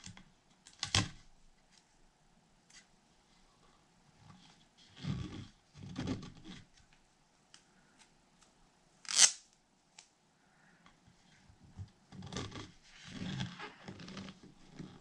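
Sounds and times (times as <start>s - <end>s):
tape ripping: 9.0s - 9.5s
tape rubbing on rubber: 9.1s - 9.4s, 12.1s - 15.0s.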